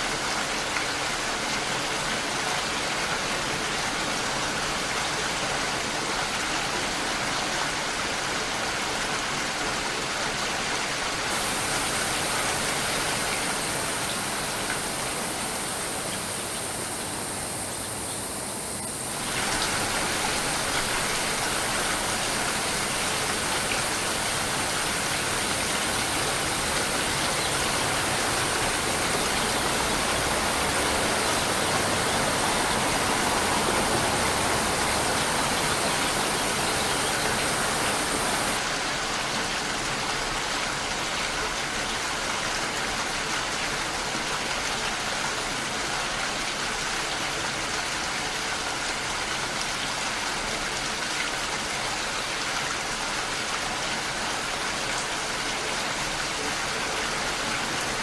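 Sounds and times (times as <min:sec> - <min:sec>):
heavy rain: 0:10.7 - 0:40.9.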